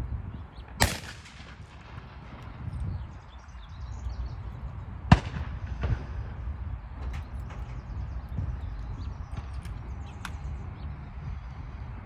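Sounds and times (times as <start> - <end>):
gunshot: 0.8 - 2.1, 5.1 - 6.4
small bird chirping: 2.4 - 4.9, 6.6 - 11.6.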